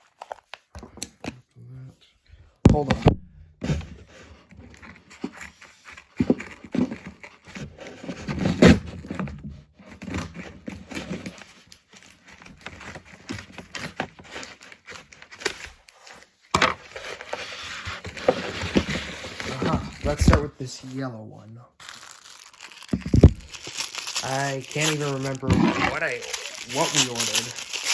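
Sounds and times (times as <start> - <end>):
packaging rustling and crinkling: 9.9 - 21.0, 21.8 - 27.9
package tearing: 21.8 - 27.9.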